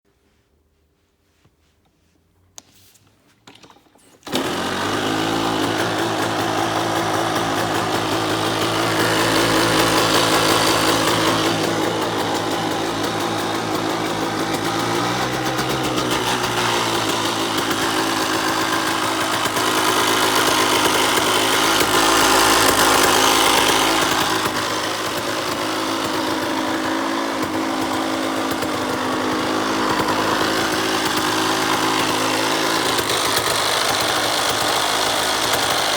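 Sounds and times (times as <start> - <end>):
two-stroke engine running: 4.2 - 35.9.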